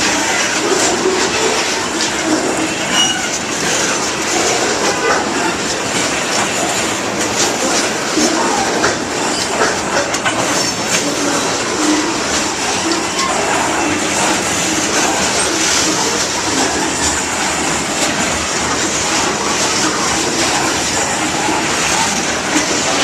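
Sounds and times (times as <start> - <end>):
train wheels clacking over rail joints: 0.0 - 23.0
high wheel squeals: 2.8 - 3.9.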